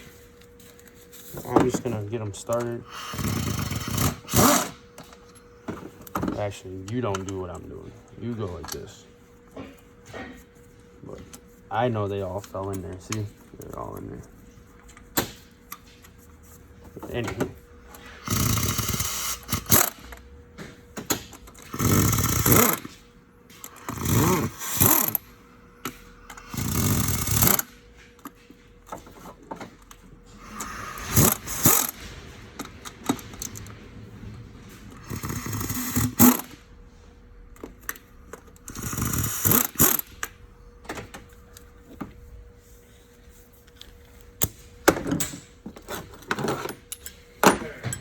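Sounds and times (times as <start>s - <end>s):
power ratchet running: 0.8s - 5.3s, 17.8s - 20.3s, 21.2s - 28.4s, 30.3s - 36.7s, 37.9s - 40.4s.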